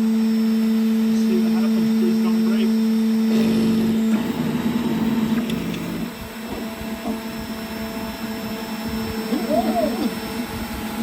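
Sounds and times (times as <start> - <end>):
spindle whining: 3.2 - 6.8
stepper motors whirring: 3.2 - 6.8.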